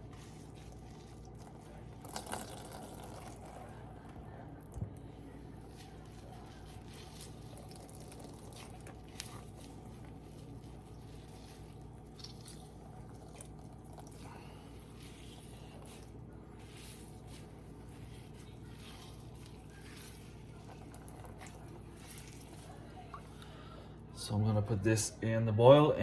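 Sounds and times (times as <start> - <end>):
squishing and dripping water: 0.0 - 23.7
steady low hum: 0.0 - 26.0.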